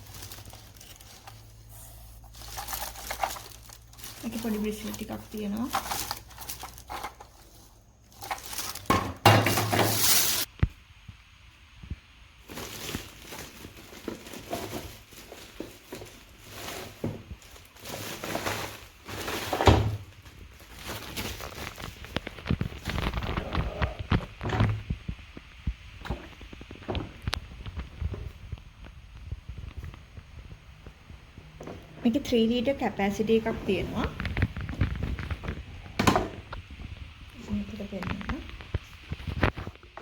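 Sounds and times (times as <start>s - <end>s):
packaging rustling: 0.0s - 10.5s, 12.4s - 30.6s, 34.0s - 35.9s.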